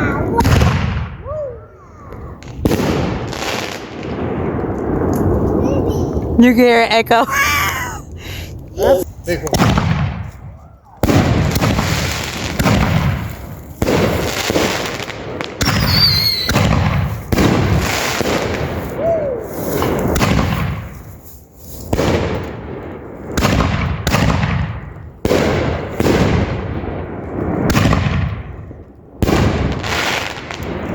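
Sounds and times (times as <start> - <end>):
fireworks bangs with echo: 0.0 - 6.4, 9.5 - 21.2, 21.8 - 30.9
high firework whistle: 15.6 - 16.7.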